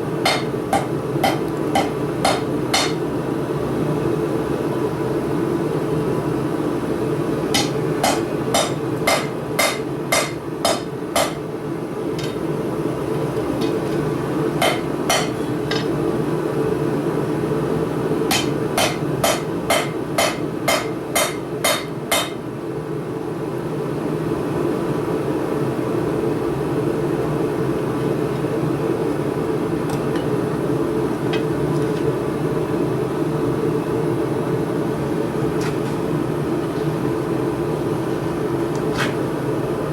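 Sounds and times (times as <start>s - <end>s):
hammer ringing on anvil: 0.3s - 3.0s, 14.6s - 15.9s.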